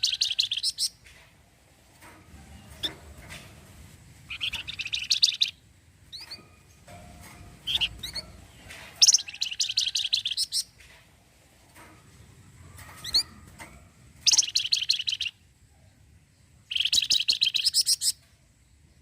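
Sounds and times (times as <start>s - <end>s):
bird chattering trills: 0.0s - 1.0s, 4.3s - 6.4s, 7.6s - 10.7s, 14.2s - 15.4s, 16.7s - 18.2s.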